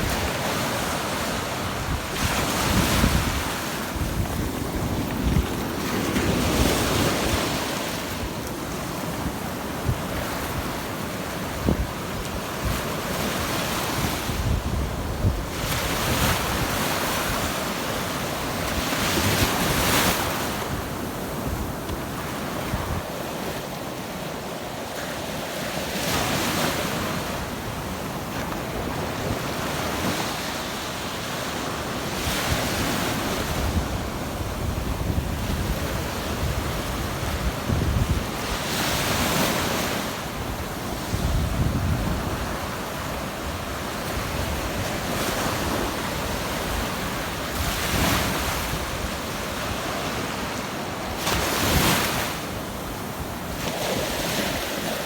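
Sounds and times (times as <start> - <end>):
wind buffeting microphone: 0.0 - 17.6, 32.2 - 50.0
surf breaking on a beach: 0.0 - 55.0.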